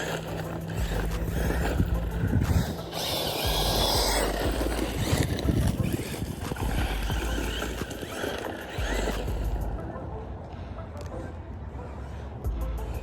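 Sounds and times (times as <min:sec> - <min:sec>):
heavy low rumble: 0:00.0 - 0:08.0
rc car motor whine: 0:00.0 - 0:09.8.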